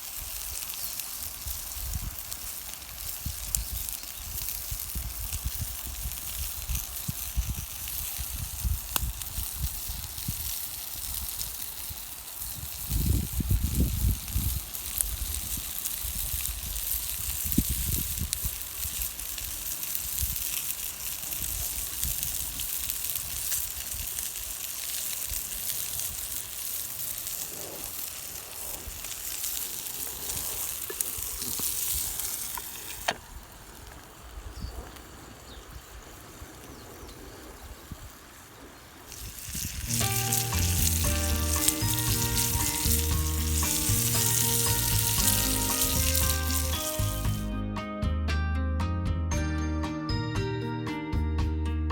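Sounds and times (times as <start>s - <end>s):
food sizzling and crackling: 0.0s - 47.5s
background music: 39.9s - 51.9s.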